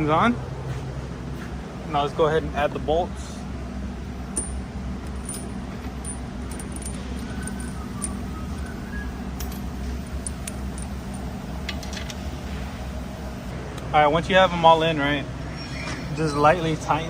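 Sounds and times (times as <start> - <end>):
steady low hum: 0.0 - 17.0
metal bolts clinking: 4.3 - 12.2.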